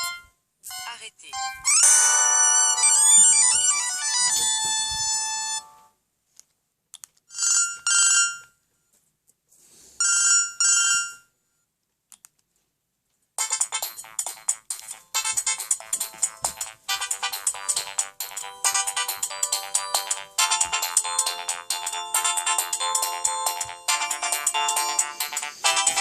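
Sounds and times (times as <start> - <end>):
mobile phone ringtone melody: 0.0 - 6.0, 7.3 - 8.5, 13.4 - 26.0.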